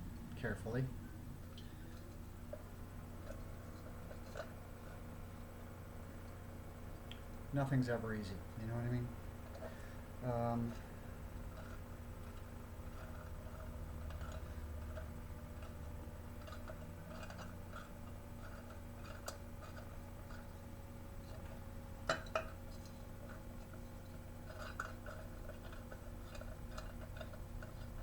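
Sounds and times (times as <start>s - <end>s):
steady low hum: 0.0s - 28.0s
lamp parts clicking and tapping: 10.7s - 28.0s.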